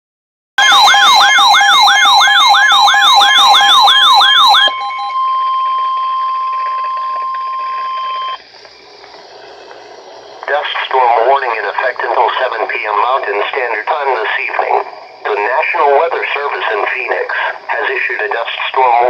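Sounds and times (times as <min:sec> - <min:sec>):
electronic siren wail: 0:00.6 - 0:12.6
steady alarm tone: 0:00.6 - 0:19.0
faint radio hiss: 0:08.5 - 0:19.0.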